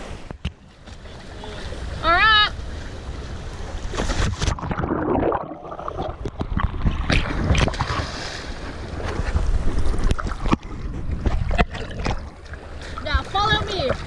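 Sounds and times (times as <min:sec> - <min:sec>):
water splashing and gurgling: 0:00.0 - 0:14.0.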